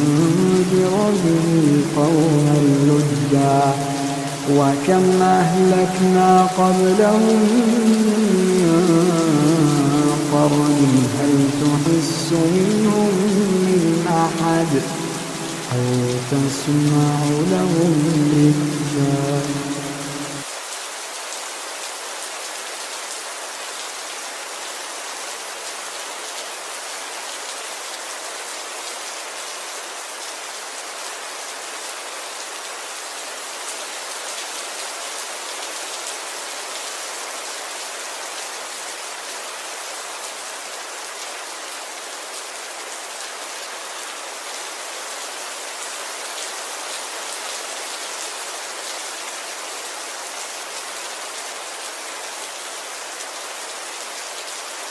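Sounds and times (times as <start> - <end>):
steady rain falling: 0.0 - 54.9.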